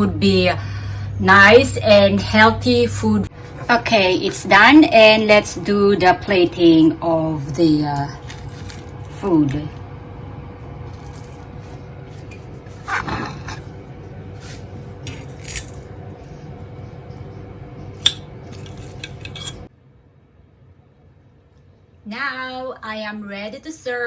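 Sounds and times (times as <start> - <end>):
kitchen hum: 0.0 - 19.7
plates and utensils clinking: 10.9 - 13.8, 14.4 - 16.4, 17.9 - 19.7.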